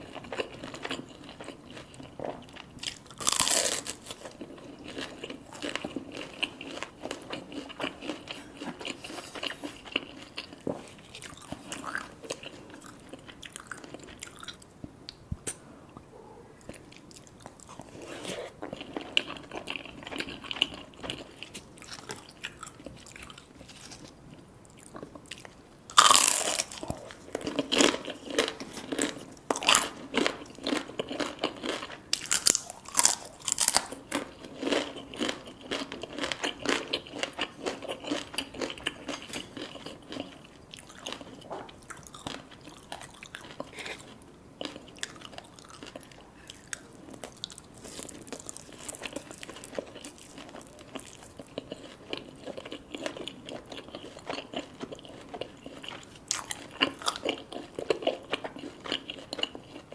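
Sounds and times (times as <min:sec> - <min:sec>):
crunchy chewing: 0:00.0 - 0:14.7, 0:15.5 - 0:59.9
crunchy bite: 0:02.8 - 0:04.3, 0:25.9 - 0:29.9, 0:30.7 - 0:37.4.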